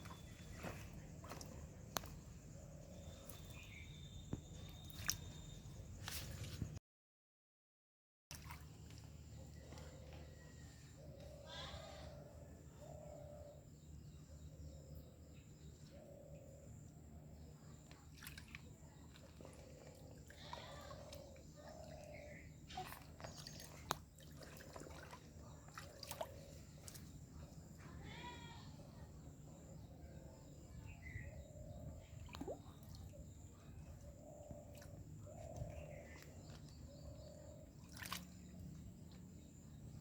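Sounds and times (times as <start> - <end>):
faint animal calls: 9.8 - 13.6, 19.5 - 23.6.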